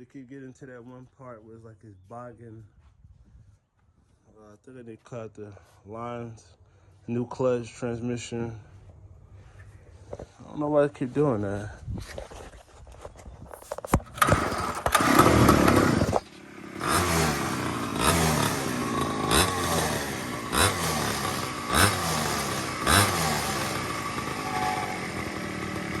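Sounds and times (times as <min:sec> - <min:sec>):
small engine clicks: 0:14.0 - 0:19.8
small engine revving: 0:14.1 - 0:26.0.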